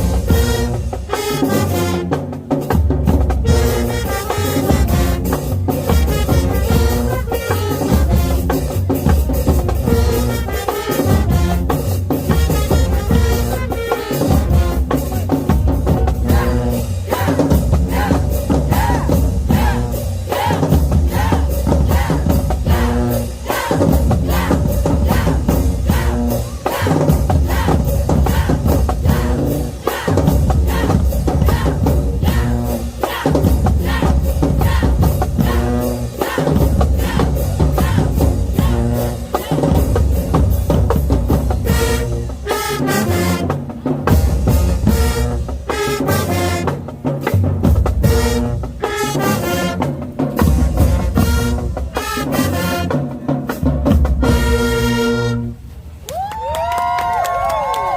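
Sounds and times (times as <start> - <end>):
school band playing: 0.0 - 56.0
bass and snare drums: 0.0 - 57.9
horns: 0.0 - 57.9.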